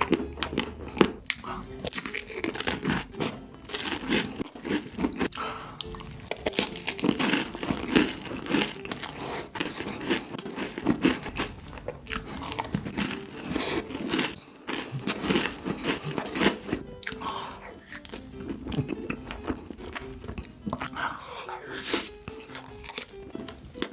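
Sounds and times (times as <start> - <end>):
crunchy chocolate bites: 0.0 - 23.9.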